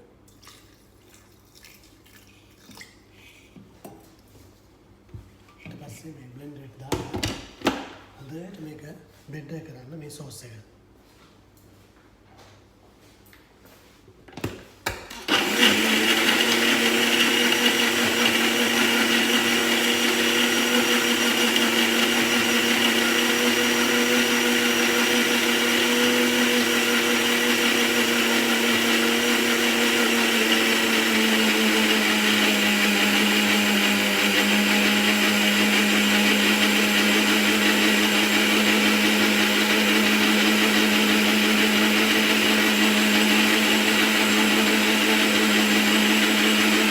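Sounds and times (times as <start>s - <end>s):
electric blender motor running: 15.2s - 46.9s.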